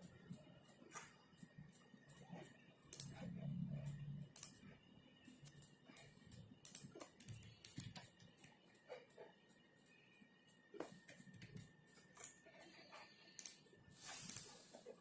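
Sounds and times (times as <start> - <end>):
keyboard typing clicks: 2.3 - 3.2, 13.4 - 13.6.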